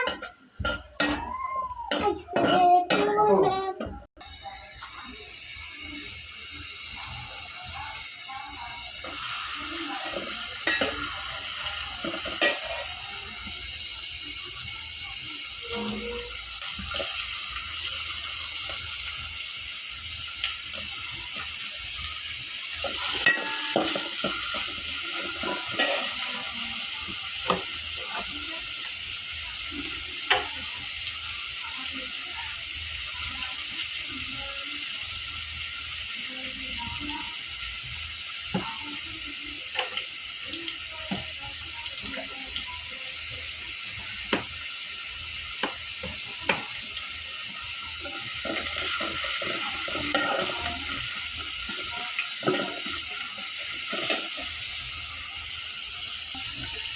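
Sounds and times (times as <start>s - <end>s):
food sizzling in a pan: 0.0s - 56.9s.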